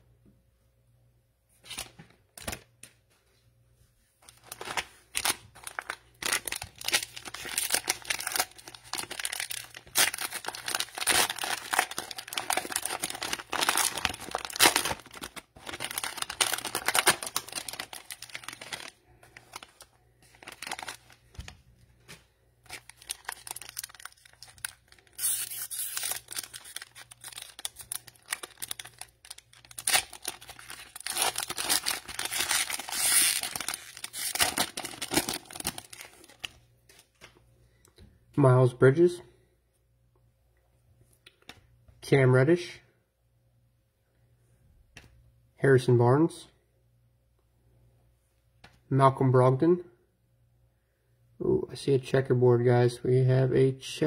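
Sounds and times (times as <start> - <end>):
plastic wrapper tearing and crinkling: 4.3 - 21.6, 22.6 - 37.1.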